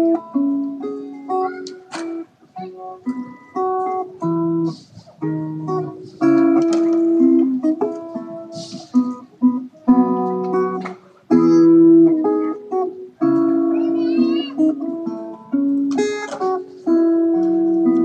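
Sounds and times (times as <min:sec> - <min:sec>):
acoustic guitar chords: 0:00.0 - 0:18.0.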